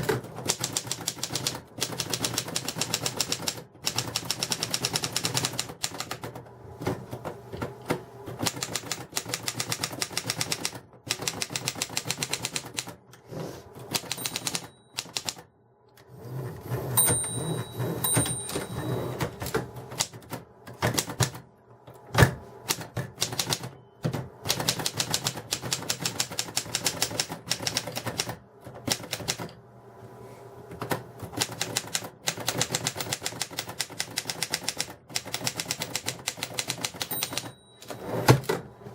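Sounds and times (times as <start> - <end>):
manual typewriter keys clacking: 0.0 - 6.4, 8.4 - 13.0, 13.9 - 15.5, 22.7 - 29.5, 31.3 - 38.0.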